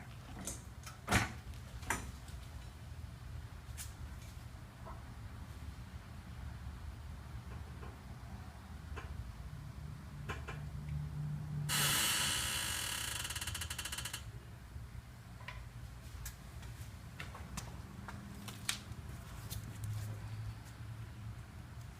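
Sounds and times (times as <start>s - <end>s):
suspension joint creaking: 11.7s - 14.3s.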